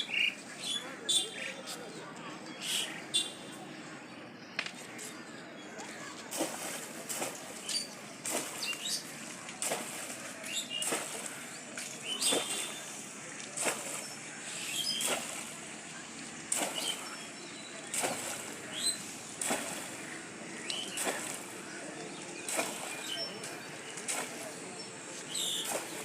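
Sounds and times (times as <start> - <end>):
water splashing: 5.8 - 26.0.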